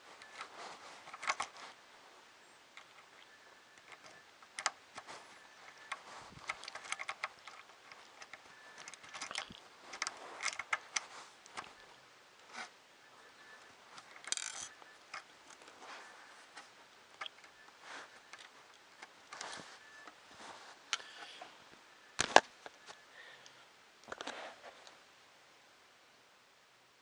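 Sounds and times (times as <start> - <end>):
plastic parts clicking and rattling: 0.0 - 1.8, 2.7 - 12.7, 13.4 - 20.2, 22.2 - 22.8
scratchy rustle: 0.0 - 12.8, 13.4 - 21.5.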